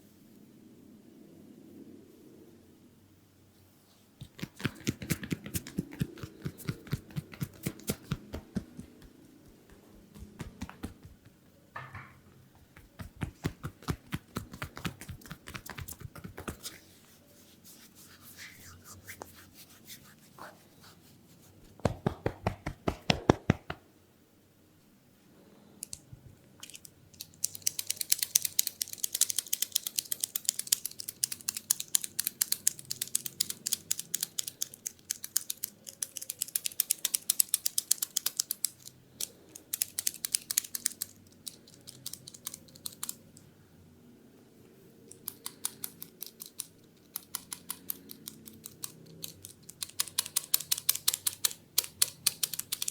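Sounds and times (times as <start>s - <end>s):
fingers scratching scalp and hair: 4.2s - 11.4s, 12.6s - 22.4s.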